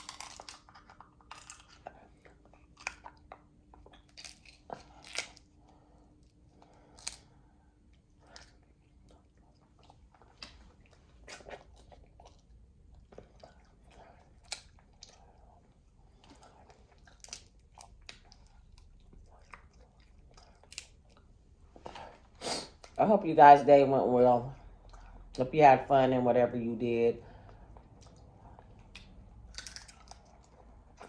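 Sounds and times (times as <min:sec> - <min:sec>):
crab shell cracking: 0:00.0 - 0:01.9, 0:02.6 - 0:05.5, 0:29.0 - 0:30.3
chewing: 0:00.0 - 0:23.0, 0:24.6 - 0:25.4, 0:27.3 - 0:31.0.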